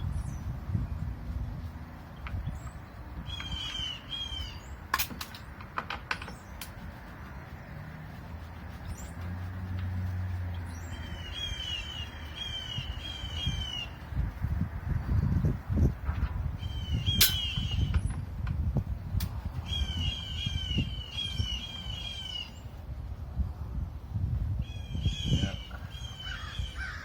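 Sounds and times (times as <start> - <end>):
bird chirping: 2.1 - 5.6, 6.2 - 14.2, 16.6 - 18.1, 19.6 - 22.7, 24.6 - 27.0.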